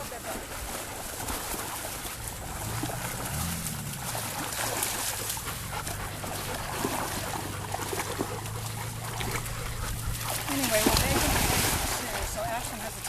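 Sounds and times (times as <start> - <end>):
dogs making small noises: 1.7 - 13.0
steady low hum: 2.2 - 11.9.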